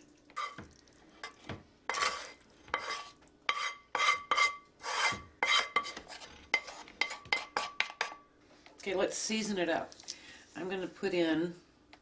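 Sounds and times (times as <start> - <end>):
utensil scraping skillet: 0.4 - 8.8.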